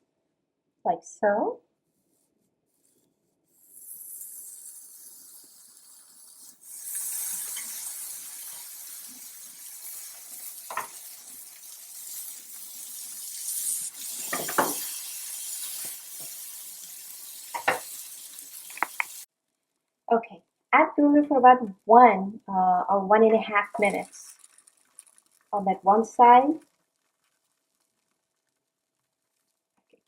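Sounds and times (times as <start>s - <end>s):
sandwiches sizzling on a grill pan: 3.5s - 19.3s, 23.6s - 25.5s.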